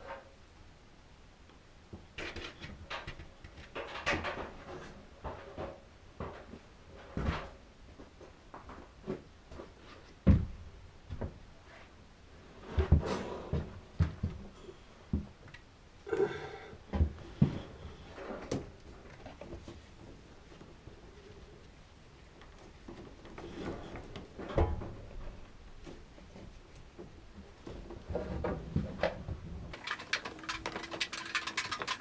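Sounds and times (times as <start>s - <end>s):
materials rustling: 29.7s - 32.0s
tools knocking and clicking: 29.8s - 32.0s.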